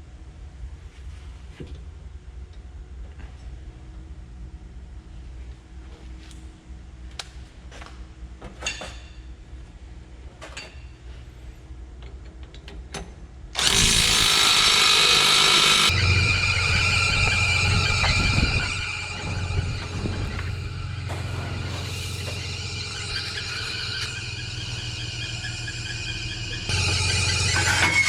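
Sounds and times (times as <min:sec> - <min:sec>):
power tool whining: 0:13.6 - 0:28.0
low hum: 0:15.7 - 0:28.0.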